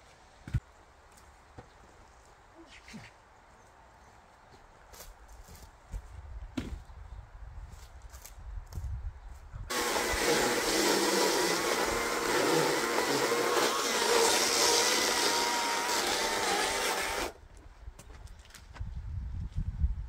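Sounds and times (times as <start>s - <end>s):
power saw cutting log: 9.7s - 17.4s.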